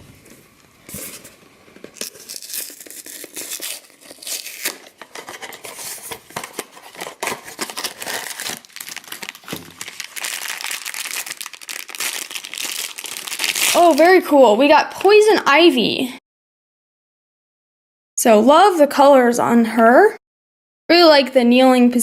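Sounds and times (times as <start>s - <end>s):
packaging crinkling and tearing: 0.9s - 14.2s.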